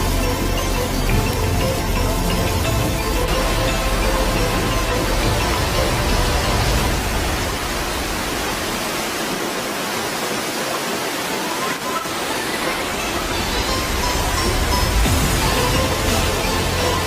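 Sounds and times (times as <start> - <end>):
steady loud rushing noise: 0.0 - 17.0.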